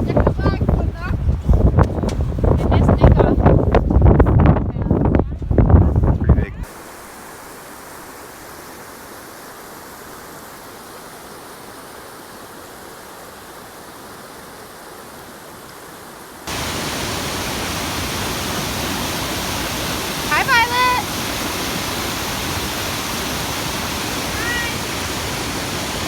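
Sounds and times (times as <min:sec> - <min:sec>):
waterfall rushing: 0:06.6 - 0:26.0.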